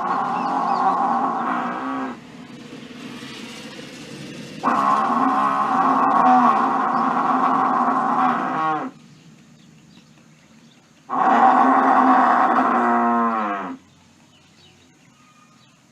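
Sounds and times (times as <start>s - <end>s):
buffalo bellowing: 0.0s - 2.3s, 4.6s - 9.0s, 11.1s - 13.9s.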